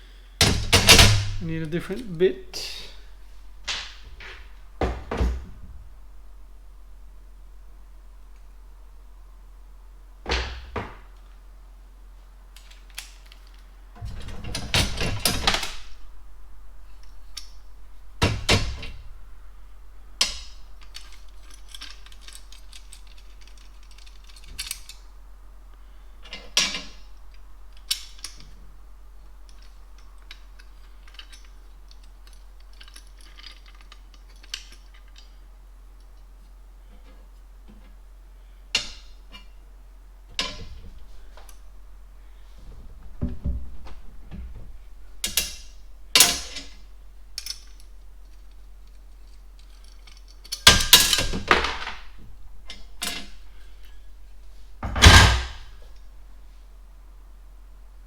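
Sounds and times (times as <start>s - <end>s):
metal hardware rattling: 40.4s - 41.6s.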